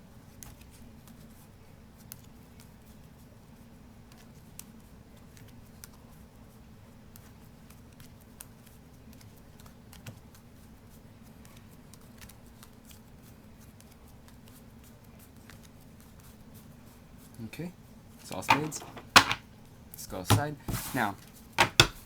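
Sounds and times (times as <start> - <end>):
playing cards clicking and flicking: 18.5 - 19.4, 20.3 - 22.0.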